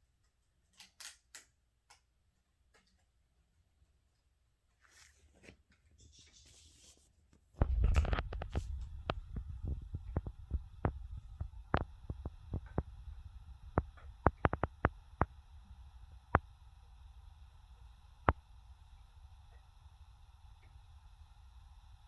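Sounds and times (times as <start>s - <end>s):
steady low rumble: 7.6s - 22.0s.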